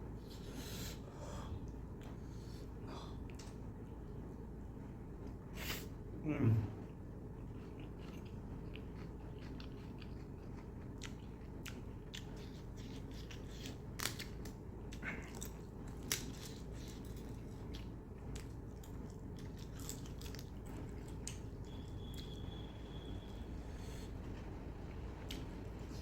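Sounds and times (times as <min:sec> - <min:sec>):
steady low hum: 0:00.0 - 0:26.0
person chewing food: 0:07.3 - 0:22.4.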